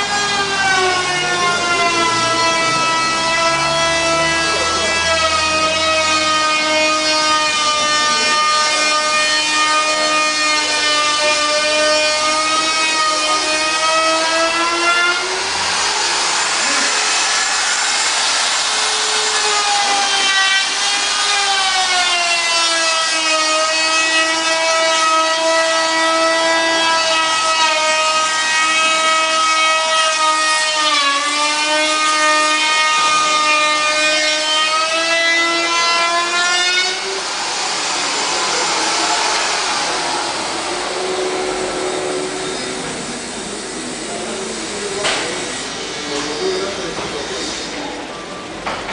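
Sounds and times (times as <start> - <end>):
droning whine: 36.6 - 48.9.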